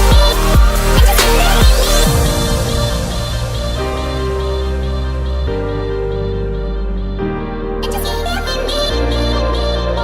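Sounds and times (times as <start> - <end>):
electronic dance music: 0.0 - 5.2
rising sweep: 0.1 - 5.8.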